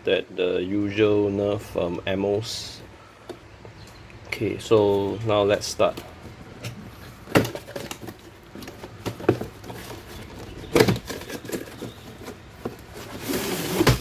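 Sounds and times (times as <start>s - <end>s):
packaging rustling and tapping: 5.9s - 14.0s.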